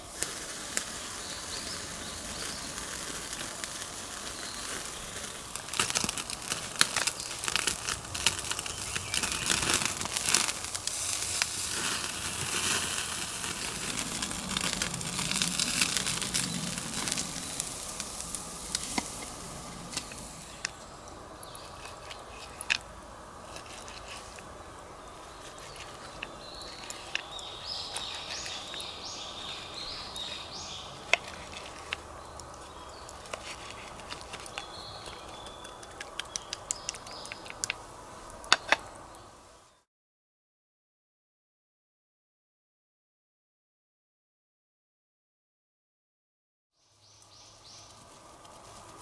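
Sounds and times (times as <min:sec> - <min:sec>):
hiss: 0:00.0 - 0:22.8
kindling crackling: 0:00.0 - 0:39.7, 0:47.2 - 0:49.0.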